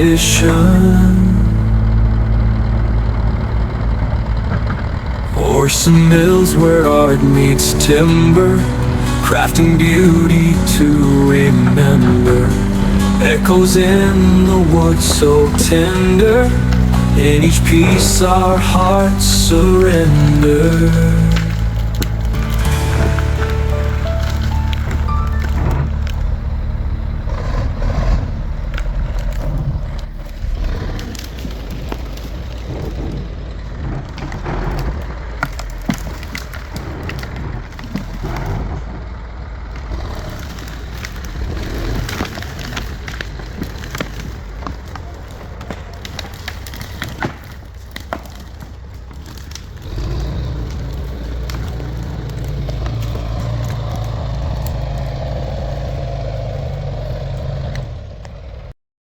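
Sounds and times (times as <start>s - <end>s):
engine drone: 0.0s - 58.7s
heavy machinery rumbling: 0.0s - 58.8s
irregular knocks and clatters: 1.6s - 39.2s.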